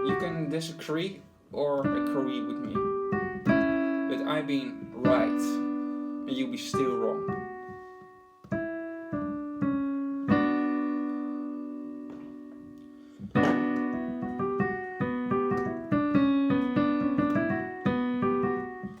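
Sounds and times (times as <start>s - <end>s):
piano chords and notes: 0.0s - 19.0s.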